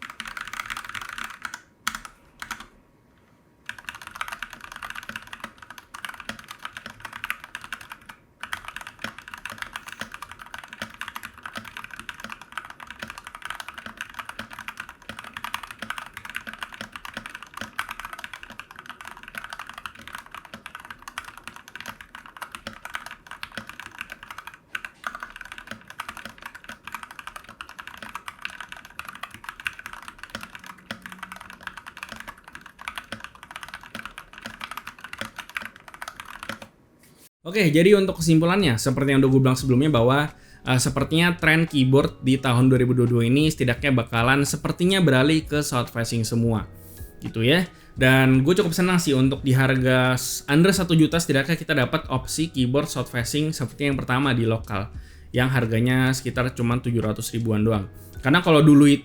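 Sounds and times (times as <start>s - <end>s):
mechanical keyboard typing: 0.0s - 2.7s, 3.7s - 36.7s.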